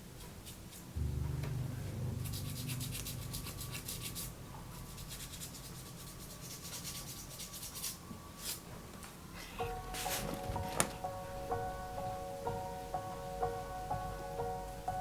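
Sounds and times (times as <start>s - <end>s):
rubbing on paper: 2.2s - 8.0s.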